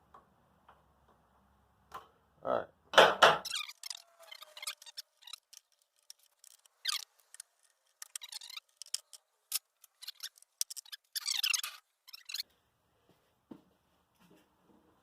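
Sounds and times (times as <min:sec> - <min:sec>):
light clicks and scrapes: 0:03.7 - 0:12.5.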